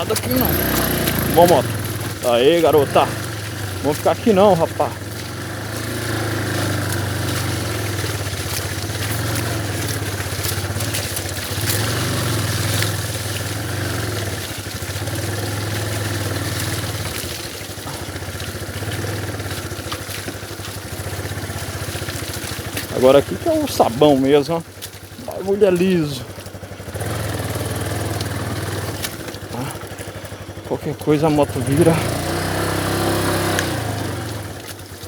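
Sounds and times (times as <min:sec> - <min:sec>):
motorcycle engine running: 0:00.0 - 0:35.0.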